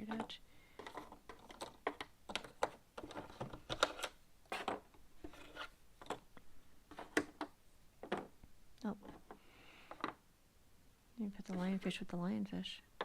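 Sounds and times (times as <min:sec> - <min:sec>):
puzzle pieces sliding on tabletop: 0:02.6 - 0:06.2.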